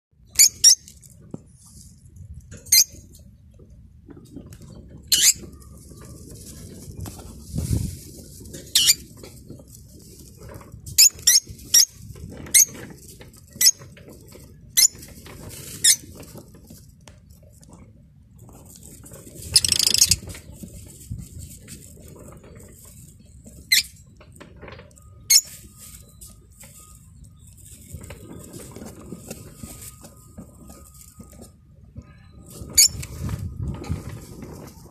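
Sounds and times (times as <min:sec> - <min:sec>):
small birds chirping: 0:19.6 - 0:20.3.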